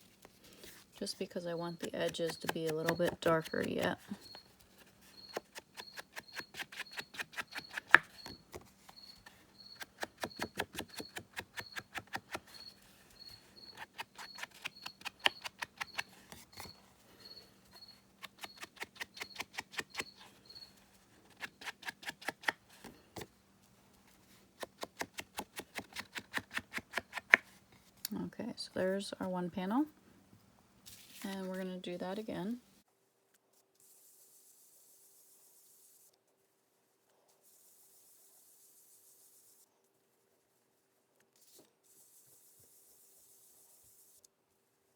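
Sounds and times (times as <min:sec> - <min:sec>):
foam sponge tapping ink pad: 0:01.7 - 0:04.3, 0:09.7 - 0:12.6.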